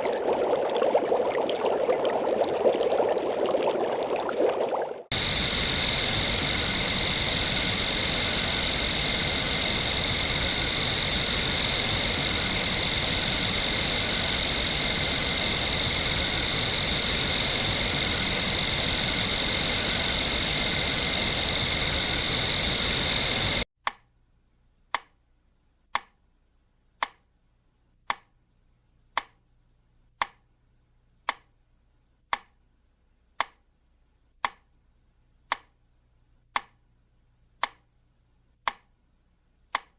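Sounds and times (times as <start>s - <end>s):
crickets trilling: 0.0s - 23.6s.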